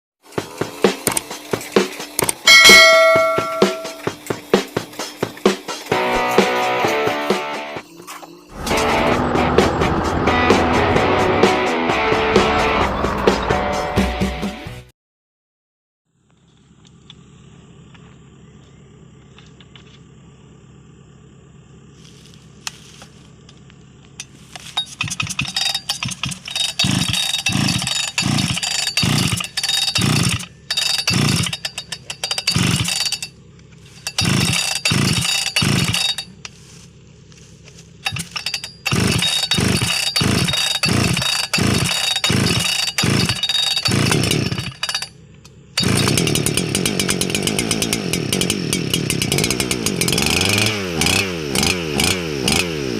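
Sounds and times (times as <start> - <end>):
chainsaw revving: 8.5 - 13.8, 25.0 - 36.8, 38.0 - 45.1, 45.7 - 52.9.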